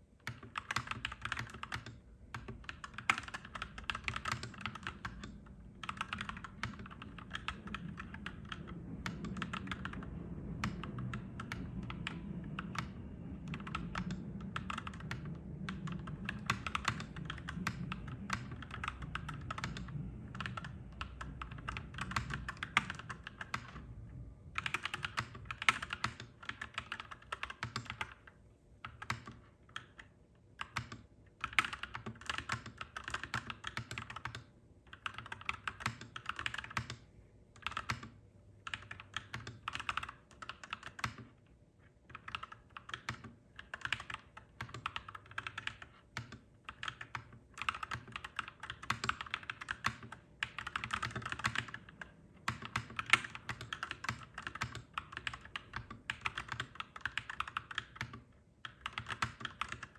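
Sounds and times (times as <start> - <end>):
steady low hum: 0.0 - 33.3
clacky mechanical keyboard typing: 0.2 - 23.9, 24.5 - 37.0, 37.6 - 41.4, 42.0 - 59.9.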